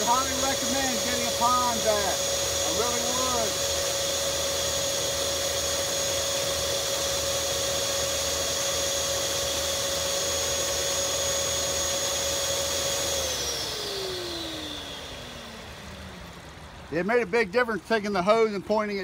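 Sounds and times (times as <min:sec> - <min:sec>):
pond vacuum motor whining: 0:00.0 - 0:19.0.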